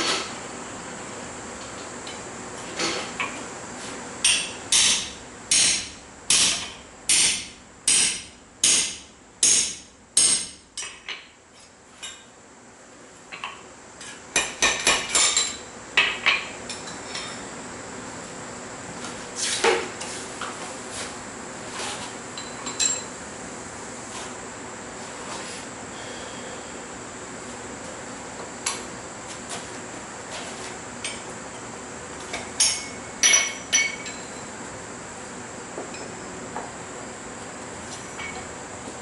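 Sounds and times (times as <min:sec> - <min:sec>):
hammer striking steel on anvil: 0:04.2 - 0:10.9.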